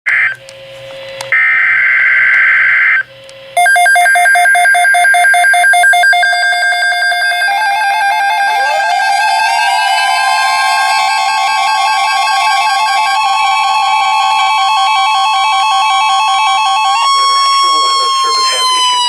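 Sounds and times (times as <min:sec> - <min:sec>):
rapid electronic alert beeping: 0:03.6 - 0:19.0
buzzy digital data screech: 0:06.0 - 0:19.0.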